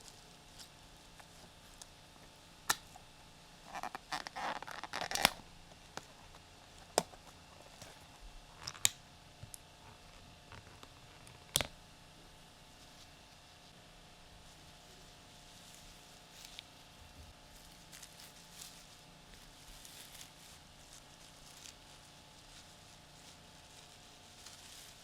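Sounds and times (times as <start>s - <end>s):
rustling and scraping: 12.7s - 25.0s.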